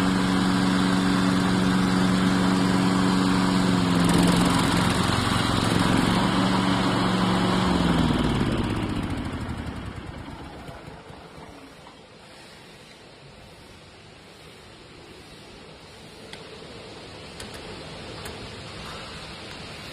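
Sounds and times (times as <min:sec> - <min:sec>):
lawn mower engine running: 0:00.0 - 0:13.4.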